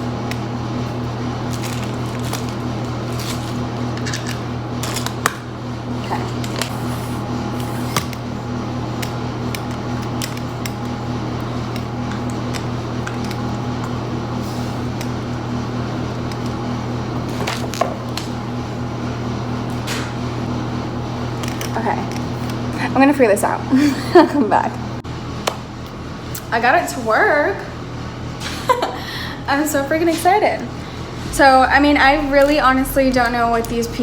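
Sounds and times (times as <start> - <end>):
low hum: 30.7 - 34.0.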